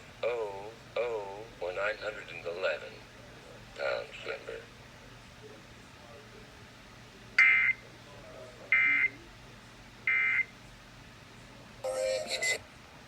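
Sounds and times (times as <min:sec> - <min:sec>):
jumble of tones: 0:11.8 - 0:12.6.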